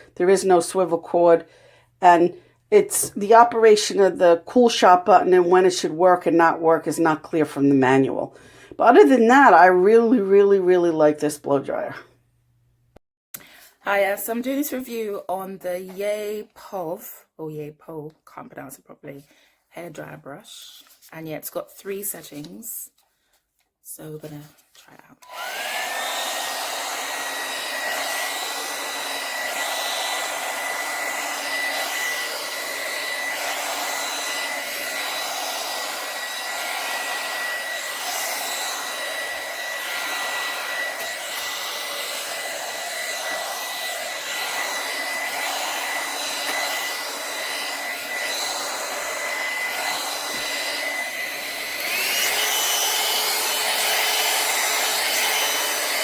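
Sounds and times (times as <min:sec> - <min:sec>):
hot air brush running: 0:25.3 - 0:56.0.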